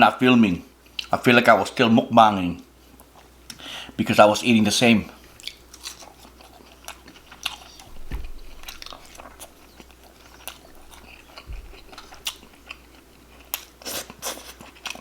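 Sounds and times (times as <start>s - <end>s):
food crunching: 5.1s - 15.0s
person chewing and biting: 5.3s - 15.0s
dull low thumps: 7.8s - 12.8s.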